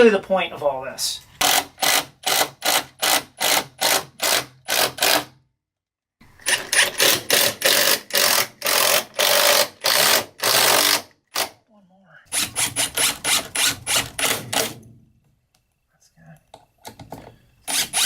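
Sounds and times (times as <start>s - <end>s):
cordless drill bursts into wood: 1.4s - 5.3s, 6.4s - 11.6s.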